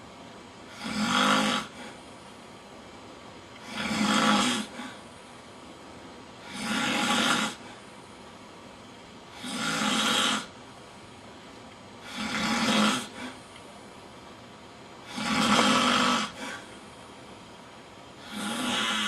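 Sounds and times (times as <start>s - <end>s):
man snoring: 0.7s - 2.0s, 3.6s - 5.0s, 6.4s - 7.8s, 9.3s - 10.6s, 12.0s - 13.4s, 15.0s - 16.8s, 18.2s - 19.0s.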